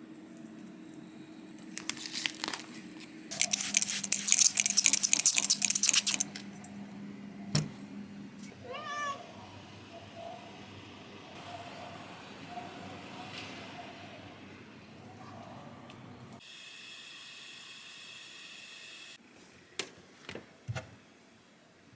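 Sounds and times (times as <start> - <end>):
loud crackly rustling: 1.6 - 6.3
cat meowing: 8.6 - 9.4.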